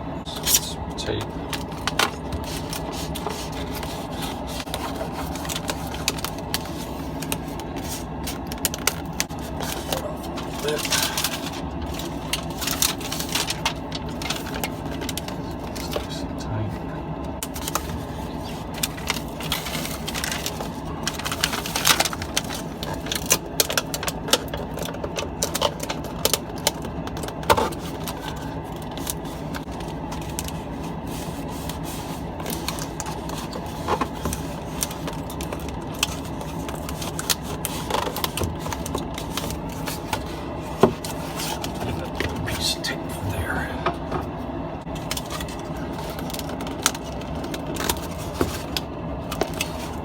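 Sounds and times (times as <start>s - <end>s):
steady low hum: 0.0s - 50.0s
hands handling plastic parts: 17.4s - 42.4s.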